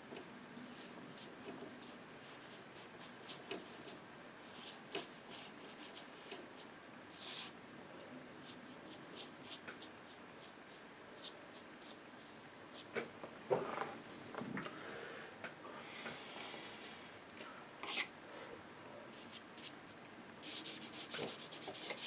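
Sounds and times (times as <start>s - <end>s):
paintbrush tapping and scraping paper: 20.5s - 22.0s.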